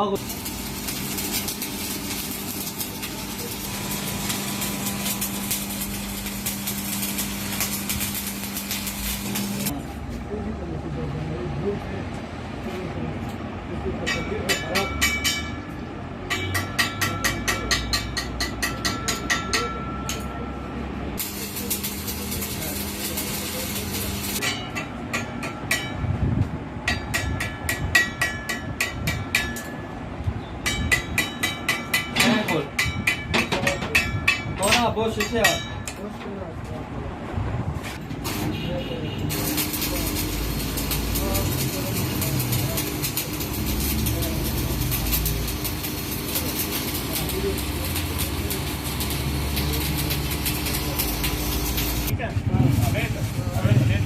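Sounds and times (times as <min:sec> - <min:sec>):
hammer striking ringing steel tube: 0:14.0 - 0:20.6, 0:24.4 - 0:26.1, 0:26.8 - 0:30.0, 0:30.6 - 0:36.0.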